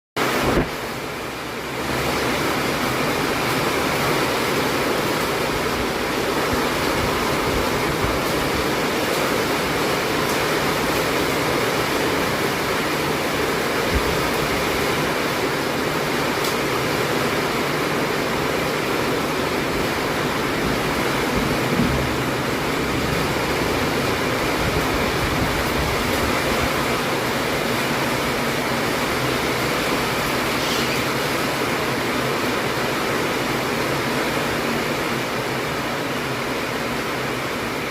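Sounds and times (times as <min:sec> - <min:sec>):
heavy rain falling: 0:00.2 - 0:37.9.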